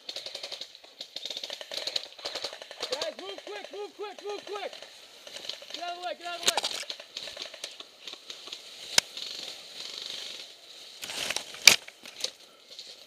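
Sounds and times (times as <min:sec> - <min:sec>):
rustling of gear: 0:04.8 - 0:13.0.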